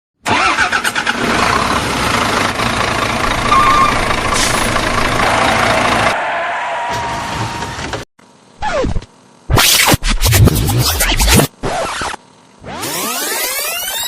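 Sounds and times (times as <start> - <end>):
truck engine running loudly: 0.8 - 6.2.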